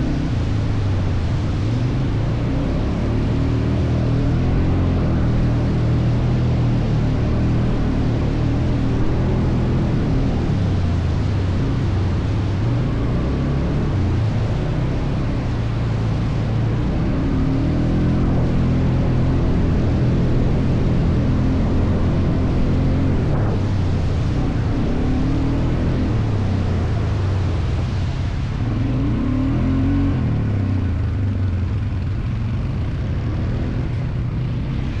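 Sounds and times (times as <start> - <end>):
atv engine droning: 0.0 - 35.0
rushing noise: 0.0 - 35.0.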